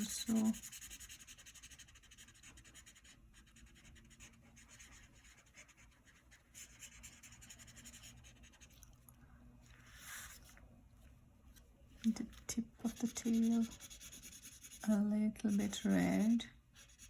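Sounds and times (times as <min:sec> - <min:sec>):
marker scratching on paper: 0:00.0 - 0:08.8, 0:12.8 - 0:17.0.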